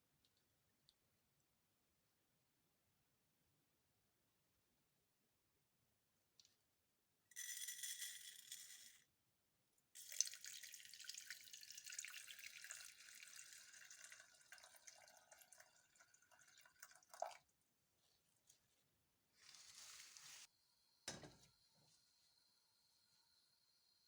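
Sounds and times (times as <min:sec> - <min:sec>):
water pouring into vessel: 0:10.0 - 0:17.5.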